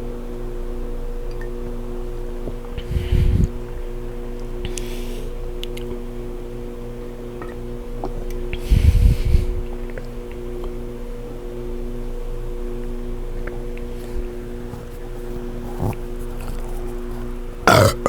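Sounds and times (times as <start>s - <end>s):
steady low hum: 0.0s - 18.0s
breath gusts into microphone: 2.8s - 3.6s.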